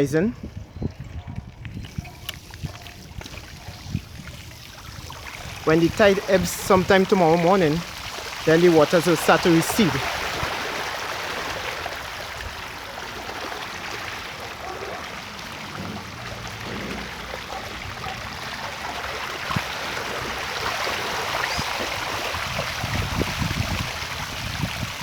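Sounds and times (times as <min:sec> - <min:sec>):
floodwater rushing: 0:01.9 - 0:25.0.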